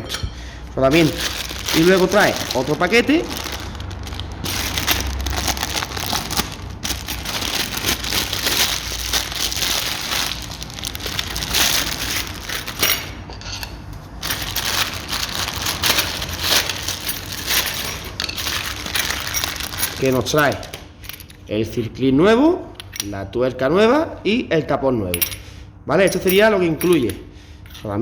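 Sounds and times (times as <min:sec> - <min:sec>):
packaging crinkling and rustling: 0:00.9 - 0:13.2, 0:14.2 - 0:20.9.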